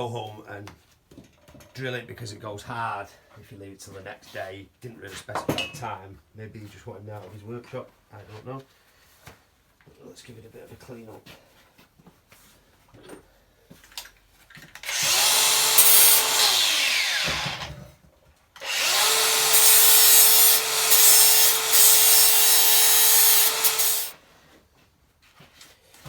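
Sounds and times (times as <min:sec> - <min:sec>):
power tool grinding metal: 0:14.8 - 0:17.8, 0:18.6 - 0:24.2.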